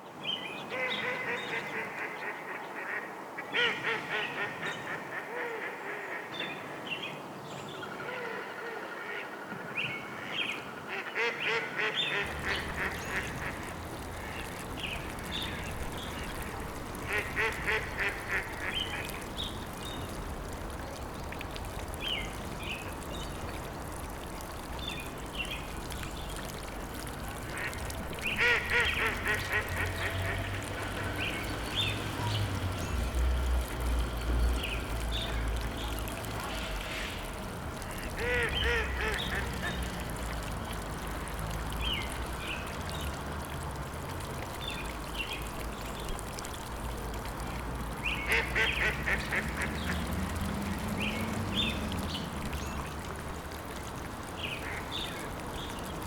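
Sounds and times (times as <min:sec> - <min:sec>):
ducks quacking: 0:10.9 - 0:14.6, 0:16.0 - 0:19.3, 0:27.4 - 0:31.6, 0:37.9 - 0:39.9, 0:48.3 - 0:50.2.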